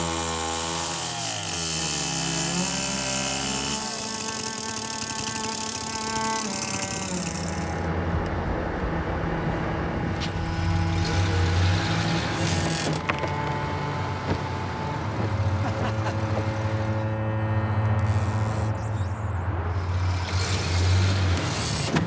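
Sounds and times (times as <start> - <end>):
heavy machinery engine running: 0.0 - 22.0
short knocks: 10.2 - 17.2.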